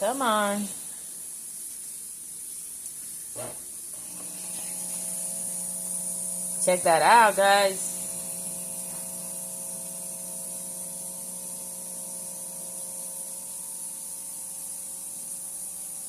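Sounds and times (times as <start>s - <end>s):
coffee machine humming and hissing: 3.4s - 16.0s.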